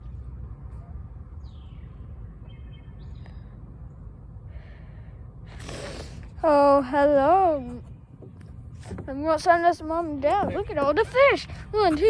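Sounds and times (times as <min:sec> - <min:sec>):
bird chirps: 0:01.4 - 0:03.6.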